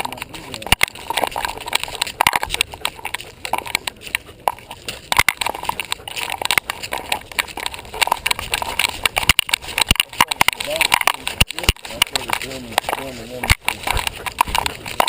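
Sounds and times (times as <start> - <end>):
camera knocking and rattling: 0.0 - 15.0
dog panting: 0.0 - 15.0.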